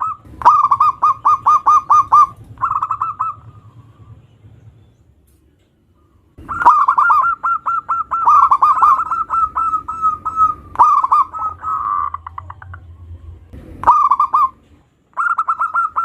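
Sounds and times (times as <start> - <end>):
dove cooing: 0.0 - 4.3, 6.0 - 16.0
short rolling burr: 9.9 - 15.1.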